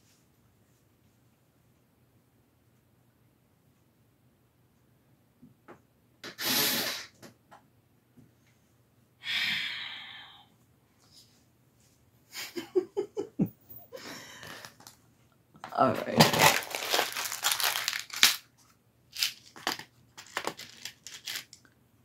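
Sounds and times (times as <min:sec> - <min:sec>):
person sighing: 0:09.2 - 0:10.5.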